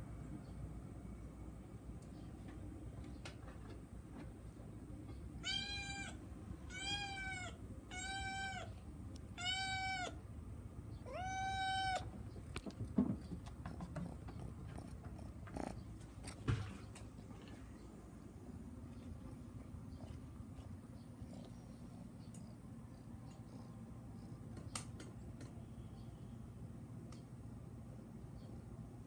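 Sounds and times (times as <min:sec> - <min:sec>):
cat meowing: 0:05.4 - 0:08.7, 0:09.3 - 0:10.2, 0:11.0 - 0:12.1.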